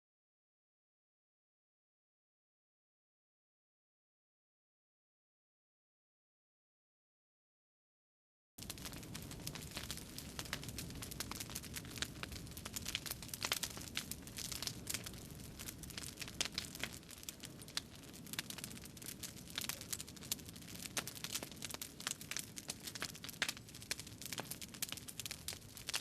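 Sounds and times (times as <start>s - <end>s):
crinkling and crackling: 8.6s - 26.0s.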